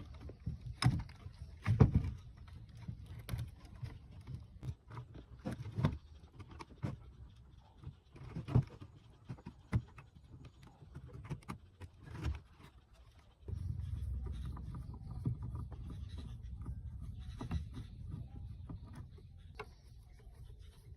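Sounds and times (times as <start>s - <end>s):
steady low hum: 13.2s - 20.9s.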